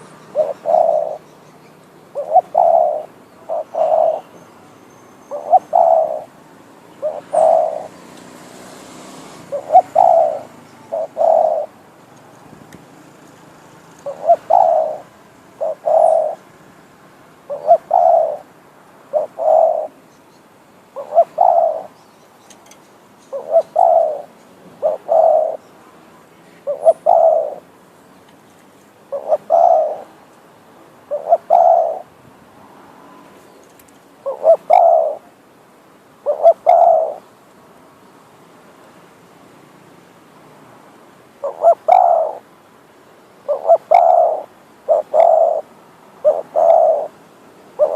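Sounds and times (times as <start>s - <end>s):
dove cooing: 0.0s - 1.3s, 2.1s - 4.4s, 5.3s - 6.4s, 7.0s - 8.1s, 9.0s - 11.8s, 14.0s - 16.5s, 17.4s - 20.0s, 20.9s - 22.0s, 23.3s - 25.6s, 26.6s - 27.7s, 29.1s - 30.2s, 31.1s - 32.2s, 34.2s - 35.4s, 36.2s - 37.3s, 41.4s - 42.5s, 43.4s - 47.2s.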